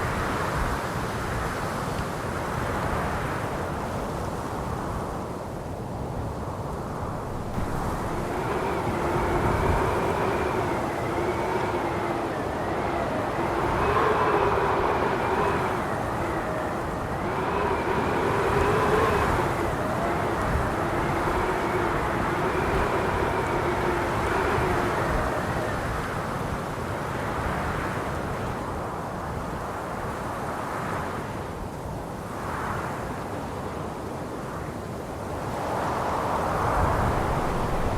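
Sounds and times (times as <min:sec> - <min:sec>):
howling wind: 0:00.0 - 0:37.9.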